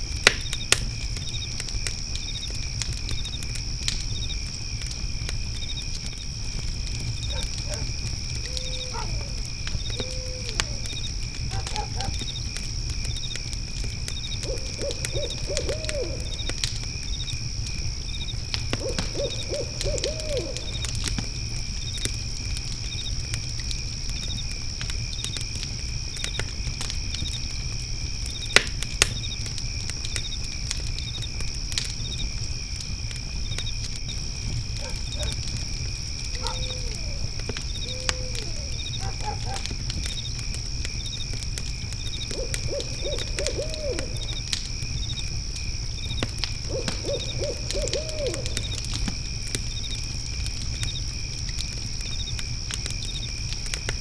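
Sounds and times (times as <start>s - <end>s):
crickets chirping: 0.0s - 54.0s
fire pit crackling: 0.0s - 54.0s
owl hooting: 8.5s - 10.8s, 14.4s - 16.4s, 18.8s - 20.8s, 36.4s - 39.6s, 42.3s - 44.3s, 46.7s - 48.8s.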